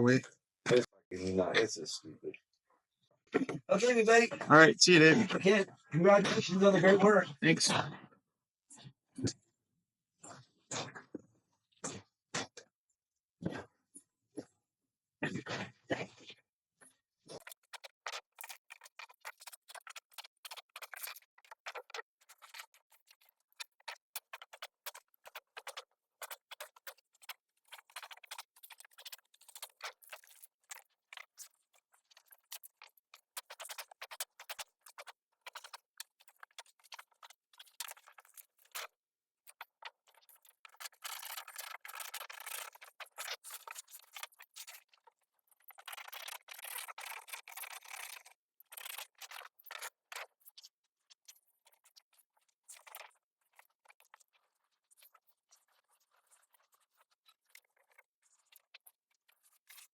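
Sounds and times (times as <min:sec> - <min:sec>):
faint clicking and scratching: 0:16.0 - 0:59.9.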